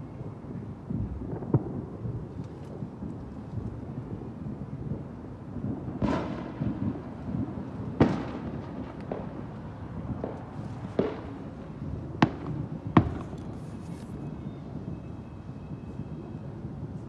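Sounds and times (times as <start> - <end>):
fireworks booming: 0.9 - 14.3.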